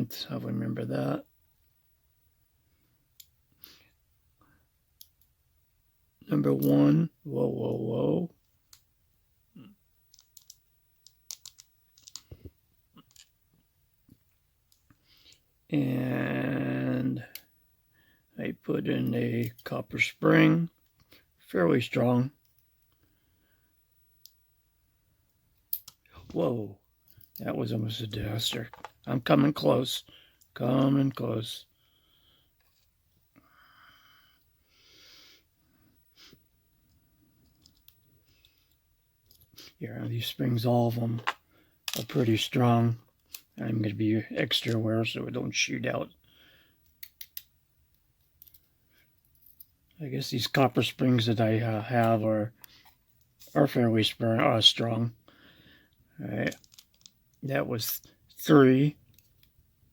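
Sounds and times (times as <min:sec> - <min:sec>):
faint breathing: 0:02.7 - 0:04.7, 0:14.9 - 0:15.5, 0:17.2 - 0:18.4, 0:23.0 - 0:23.8, 0:30.0 - 0:30.5, 0:31.6 - 0:36.4, 0:46.1 - 0:46.9, 0:55.2 - 0:56.2
small metal clicks: 0:10.1 - 0:12.3, 0:13.0 - 0:13.4, 0:25.6 - 0:26.2, 0:27.0 - 0:27.5, 0:37.4 - 0:39.5, 0:41.2 - 0:42.2, 0:46.8 - 0:49.8, 0:56.4 - 0:57.2.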